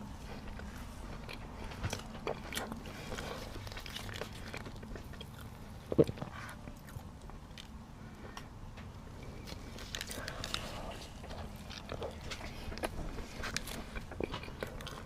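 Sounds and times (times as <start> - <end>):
chewing bread: 0.0 - 15.0.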